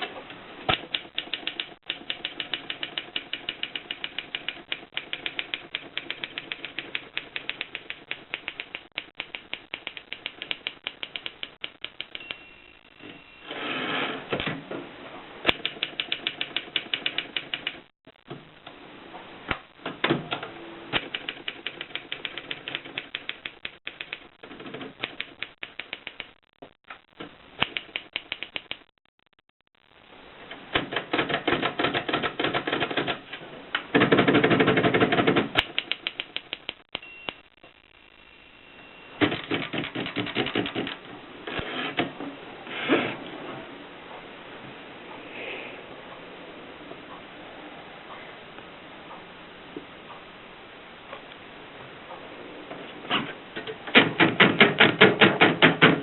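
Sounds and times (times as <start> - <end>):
manual typewriter key strikes: 0.7 - 12.3, 39.2 - 41.0, 53.9 - 56.0.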